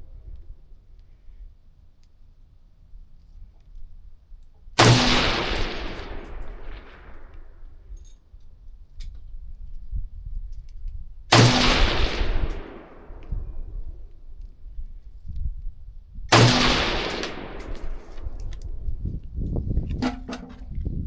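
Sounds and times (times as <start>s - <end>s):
gunshots with rolling echo: 4.8s - 7.6s, 11.3s - 13.7s, 16.3s - 18.4s.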